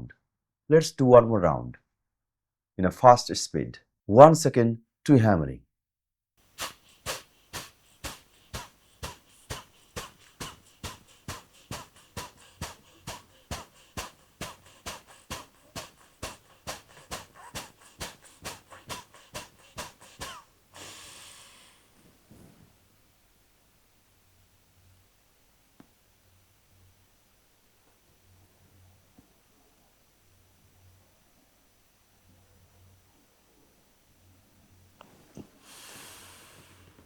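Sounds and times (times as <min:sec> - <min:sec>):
long breath: 0:06.4 - 0:22.7, 0:35.4 - 0:37.0
forceful nasal exhalations: 0:06.4 - 0:22.8, 0:35.0 - 0:37.0.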